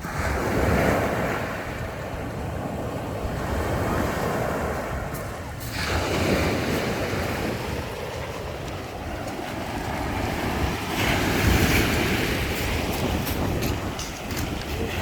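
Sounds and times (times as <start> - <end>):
waves breaking on shore: 0.0 - 15.0
wind rumble on microphone: 0.0 - 15.0.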